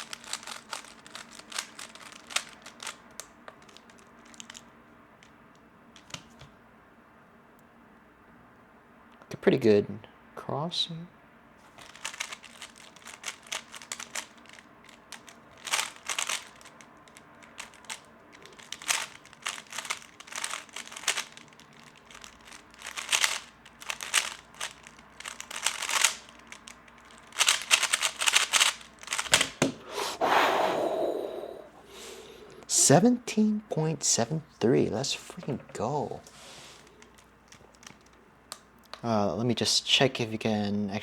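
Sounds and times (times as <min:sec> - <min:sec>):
puzzle cube plastic clicks: 0:00.0 - 0:06.5, 0:11.8 - 0:30.0, 0:35.5 - 0:39.1.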